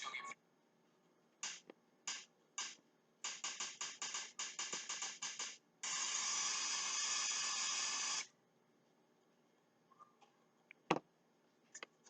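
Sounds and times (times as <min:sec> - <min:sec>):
short hissing bursts: 0:05.8 - 0:08.3.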